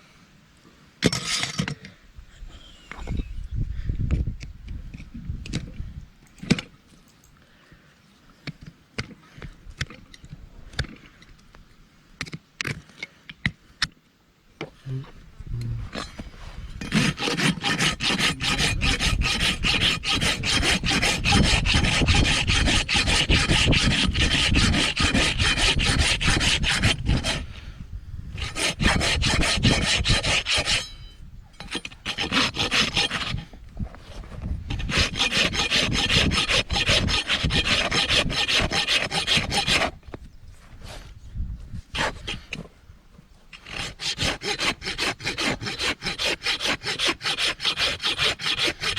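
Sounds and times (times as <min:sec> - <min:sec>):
hand tool scraping hoof: 0:14.6 - 0:42.7, 0:43.4 - 0:48.9.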